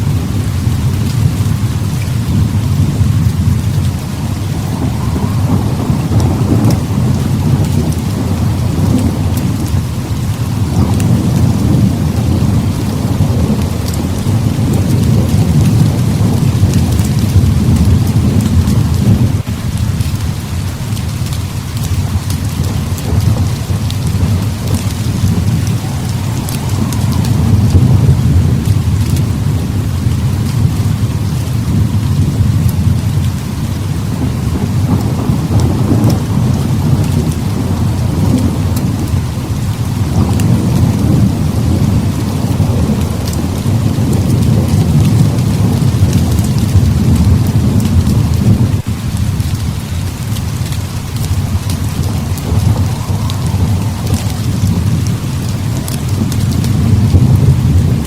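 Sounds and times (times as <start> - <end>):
heavy rain hissing: 0.0 - 58.0
thunder rumbling: 0.0 - 58.0.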